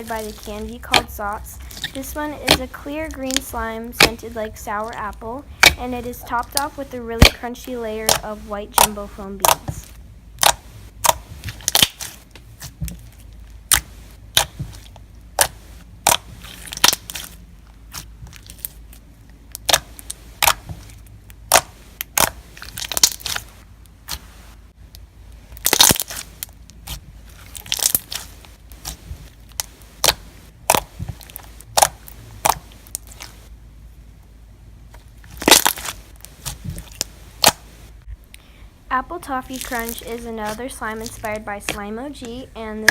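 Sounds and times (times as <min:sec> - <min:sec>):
foam beads crunching in slime: 0:00.0 - 0:09.9, 0:21.5 - 0:23.5, 0:25.6 - 0:30.2, 0:35.3 - 0:37.6, 0:39.2 - 0:42.9.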